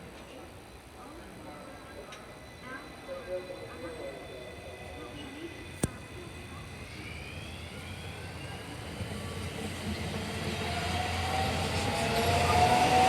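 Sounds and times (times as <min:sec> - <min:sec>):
electric train running: 0:04.0 - 0:13.0.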